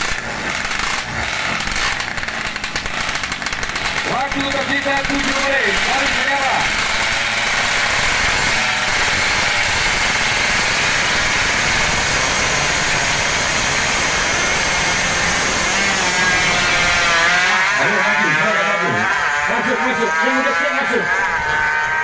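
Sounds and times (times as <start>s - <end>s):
motorbike engine revving high: 0.0s - 22.0s.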